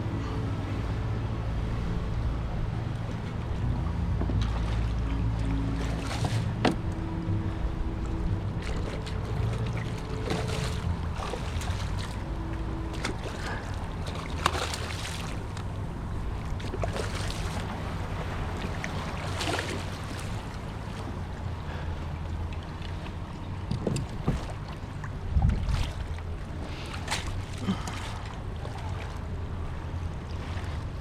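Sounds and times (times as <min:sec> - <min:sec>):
water lapping at boat hull: 0:00.0 - 0:31.0
small knocks and splashes: 0:04.0 - 0:06.9, 0:08.6 - 0:12.2, 0:12.9 - 0:15.8, 0:16.4 - 0:17.8, 0:18.4 - 0:21.3, 0:22.8 - 0:29.2
wind on microphone: 0:25.1 - 0:26.1.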